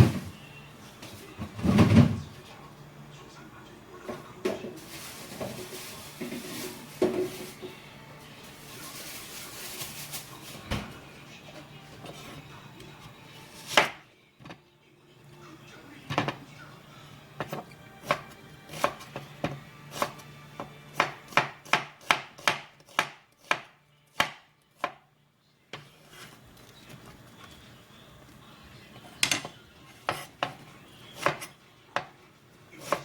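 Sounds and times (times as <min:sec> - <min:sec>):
knife chopping on cutting board: 0:13.6 - 0:14.0, 0:17.4 - 0:25.0, 0:30.0 - 0:32.1, 0:32.8 - 0:33.0.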